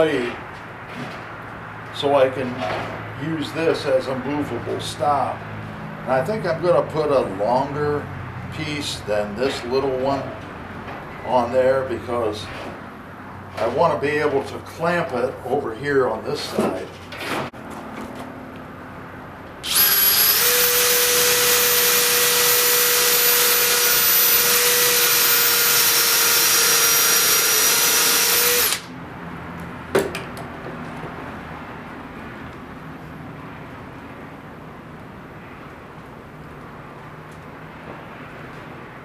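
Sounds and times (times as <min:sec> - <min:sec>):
power tool motor whining: 0:19.6 - 0:28.9.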